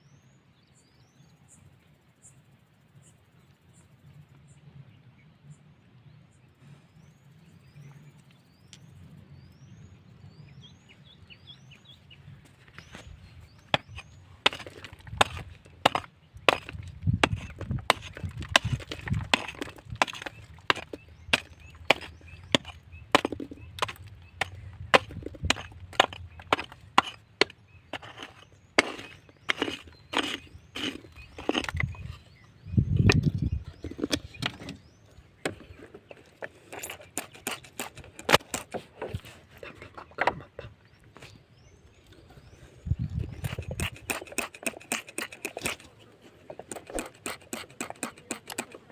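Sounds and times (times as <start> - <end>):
hand tool breaking rock: 13.7 - 32.1, 36.3 - 39.2, 43.2 - 45.9, 46.5 - 48.9.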